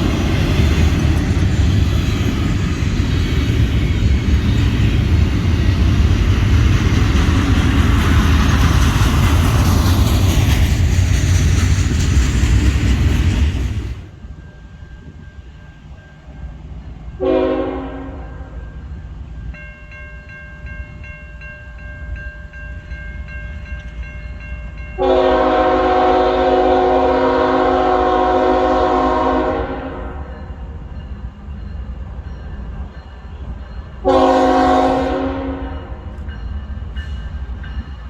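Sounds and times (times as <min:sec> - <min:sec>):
locomotive air horn blasts: 0:17.2 - 0:18.6, 0:25.0 - 0:30.3, 0:34.0 - 0:36.1
locomotive bell ringing: 0:18.2 - 0:25.8, 0:30.1 - 0:34.8, 0:35.6 - 0:38.0.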